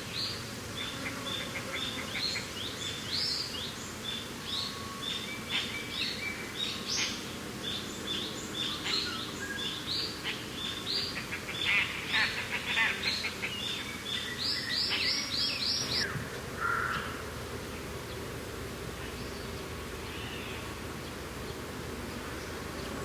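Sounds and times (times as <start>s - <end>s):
small birds chirping: 0.1s - 17.1s.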